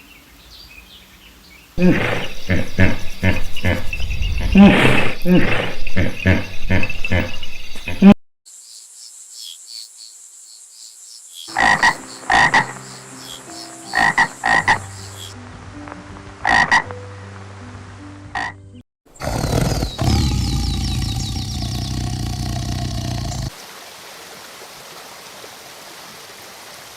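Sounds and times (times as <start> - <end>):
frog croaking: 1.8 - 8.2, 11.5 - 15.4, 16.4 - 16.9, 18.3 - 18.6, 19.2 - 23.5.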